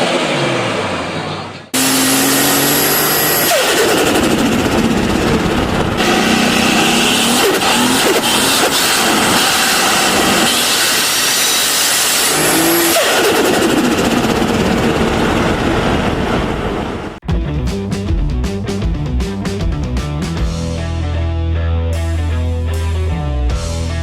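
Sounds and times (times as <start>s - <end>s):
car engine revving: 0.0s - 17.0s.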